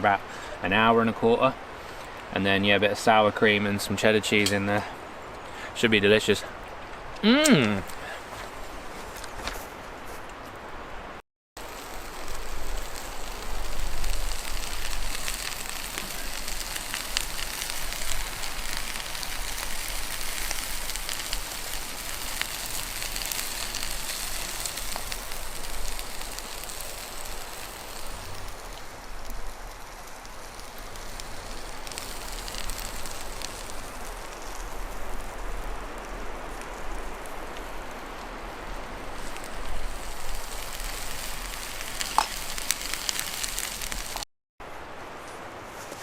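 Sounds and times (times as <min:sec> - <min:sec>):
campfire crackling and popping: 0:06.3 - 0:09.6, 0:11.6 - 0:44.2.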